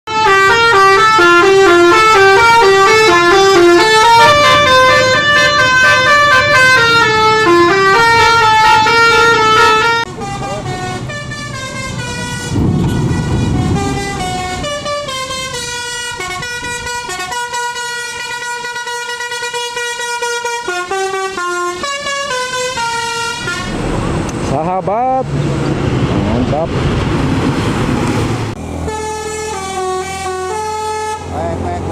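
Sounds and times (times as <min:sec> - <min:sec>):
bus horn playing a tune: 0:00.1 - 0:23.8, 0:28.6 - 0:31.9
low rumble: 0:12.0 - 0:15.0.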